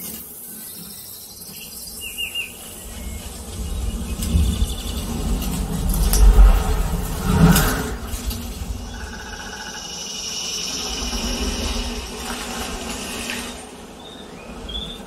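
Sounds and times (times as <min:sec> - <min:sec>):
high hum: 0:02.5 - 0:13.8
deep rumble: 0:02.8 - 0:09.8
short whoosh: 0:05.8 - 0:09.2.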